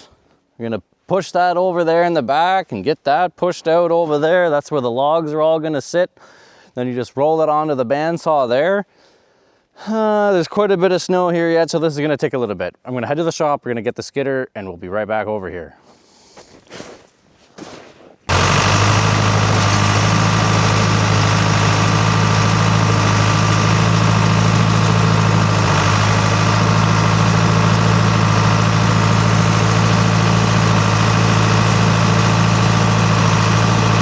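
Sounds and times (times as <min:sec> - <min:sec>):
engine running with deep drone: 0:18.3 - 0:34.0.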